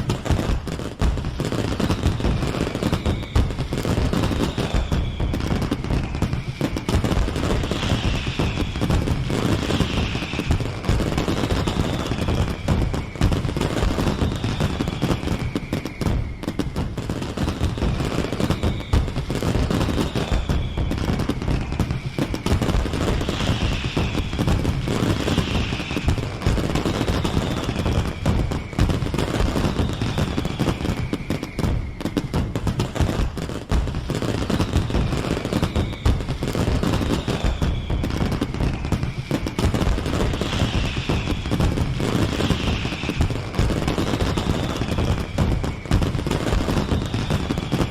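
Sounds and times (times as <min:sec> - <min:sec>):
falling firework whistle: 0:00.0 - 0:47.9
fireworks bangs and crackling: 0:00.0 - 0:47.9.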